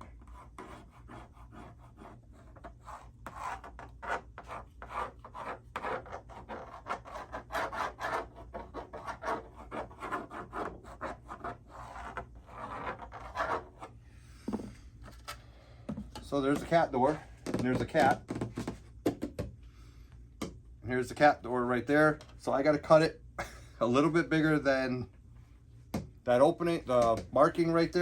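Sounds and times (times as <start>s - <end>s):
pencil scratching on wood: 0.0s - 14.0s.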